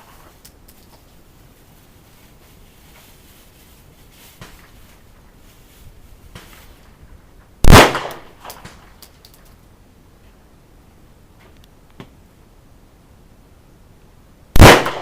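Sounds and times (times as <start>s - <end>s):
loud handgun shot with echo: 7.6s - 8.7s, 14.6s - 15.0s
faint distant gunshots: 7.6s - 8.9s, 14.6s - 15.0s.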